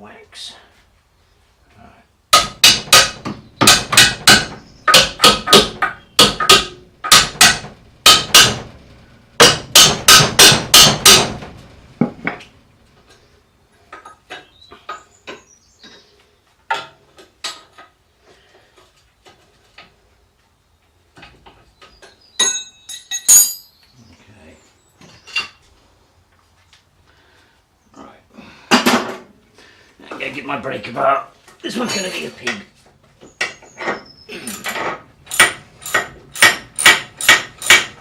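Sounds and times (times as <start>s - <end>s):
tools clinking: 22.4s - 23.8s.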